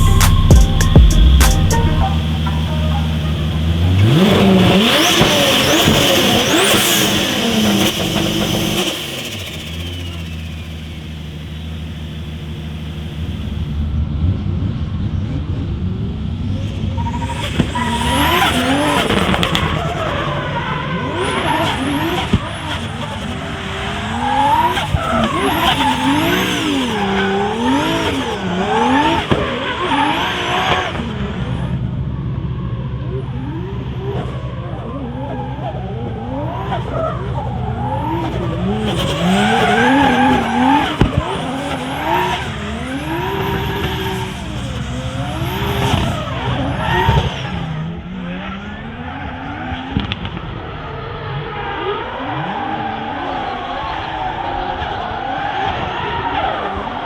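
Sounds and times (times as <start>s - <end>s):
car engine revving: 0.0s - 57.0s
tyre squeal: 16.8s - 31.0s, 35.3s - 47.8s.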